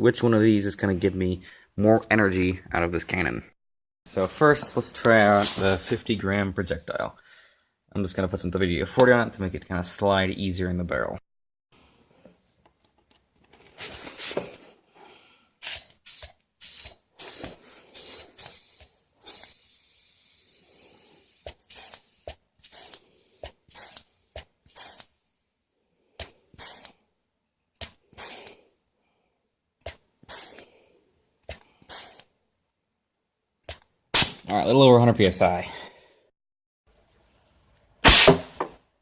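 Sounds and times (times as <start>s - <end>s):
aerosol spray hissing: 15.6s - 25.1s, 26.6s - 27.0s, 28.2s - 28.6s, 30.2s - 30.7s, 31.9s - 32.3s.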